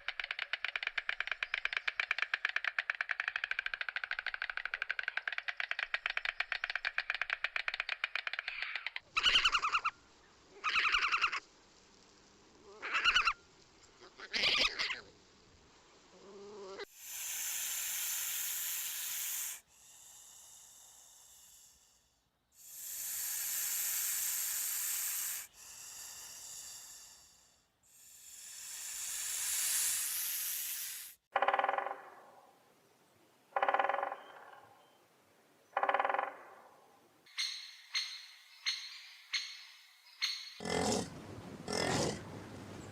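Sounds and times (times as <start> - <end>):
animal rattling: 0.0 - 9.0
short pitched animal calls: 12.7 - 13.4
animal hissing: 16.2 - 31.3.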